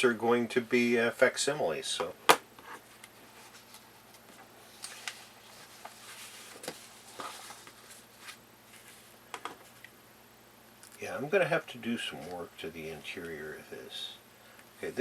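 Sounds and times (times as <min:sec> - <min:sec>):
low room hiss: 0:00.0 - 0:15.0
paper pages clicking and rustling: 0:04.8 - 0:09.8.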